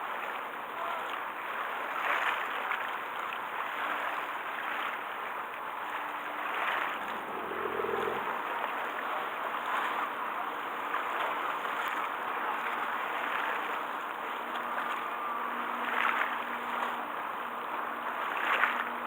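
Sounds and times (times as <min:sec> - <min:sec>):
wind: 0:00.0 - 0:19.0
short low tone: 0:07.0 - 0:08.4.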